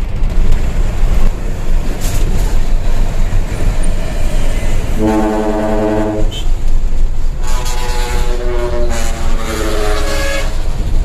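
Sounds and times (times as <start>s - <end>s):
truck engine rumble: 0.0s - 11.0s
air horn blast: 5.0s - 6.5s, 7.4s - 10.7s.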